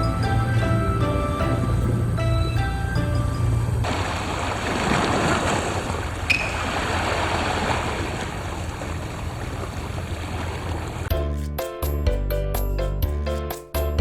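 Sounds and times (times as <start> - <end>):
water rushing: 0.0 - 11.1
wind: 0.0 - 11.1
boat engine hum: 0.0 - 11.4
music with a clear beat: 11.1 - 14.0.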